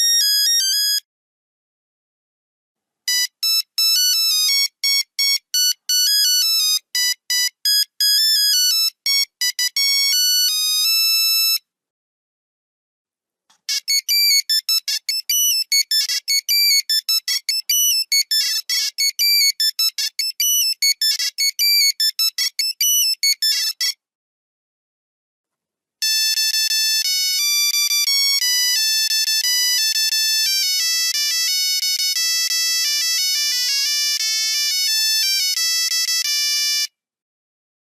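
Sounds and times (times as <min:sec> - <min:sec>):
buzzy monophonic ringtone: 0:00.0 - 0:01.0, 0:03.1 - 0:11.6, 0:13.7 - 0:24.0, 0:26.0 - 0:36.9.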